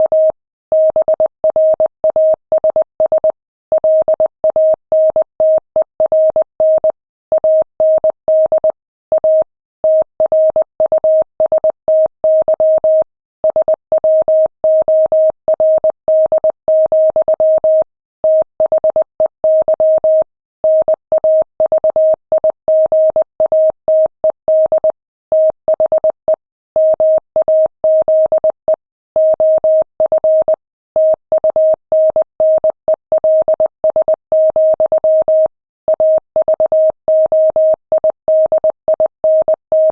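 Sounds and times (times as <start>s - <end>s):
morse code beeps: 17.1s - 39.9s.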